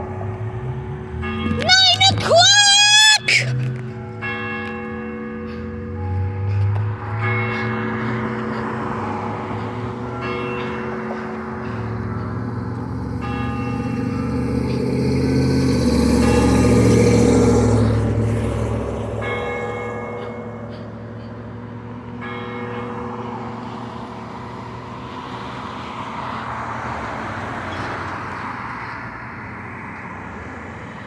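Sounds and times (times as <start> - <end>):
church bell tolling: 0.0 - 2.6, 3.2 - 25.0
passing vehicle rumble: 0.0 - 4.3, 4.9 - 31.0.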